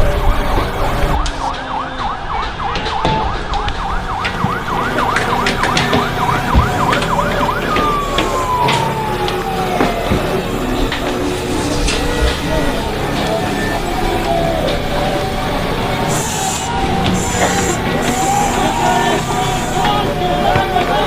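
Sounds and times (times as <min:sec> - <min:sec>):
dense noisy din: 0:00.0 - 0:21.0
emergency siren yelping: 0:00.0 - 0:21.0
sharp cracks: 0:01.2 - 0:11.2.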